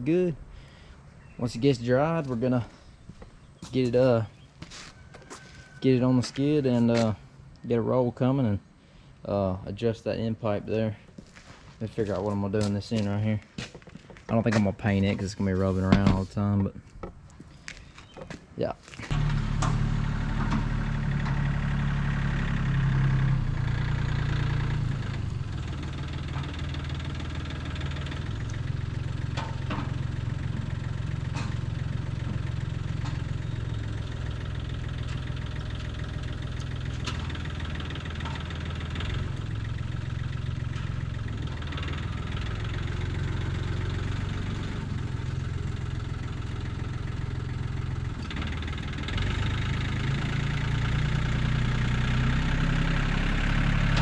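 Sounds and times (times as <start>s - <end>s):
skid steer engine running: 19.0s - 54.0s.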